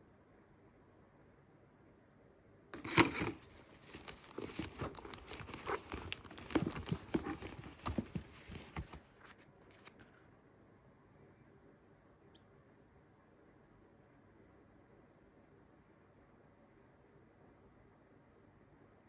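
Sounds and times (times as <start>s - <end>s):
packaging crinkling and tearing: 2.8s - 10.1s.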